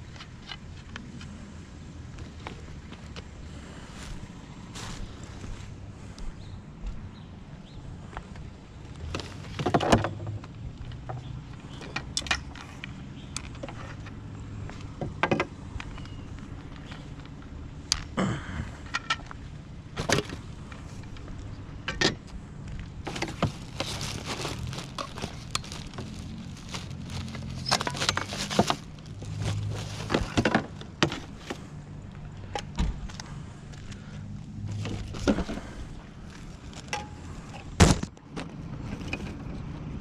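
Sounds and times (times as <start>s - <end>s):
clunks knocks and rattles: 9.1s - 12.6s
vehicle engine running: 12.7s - 37.8s.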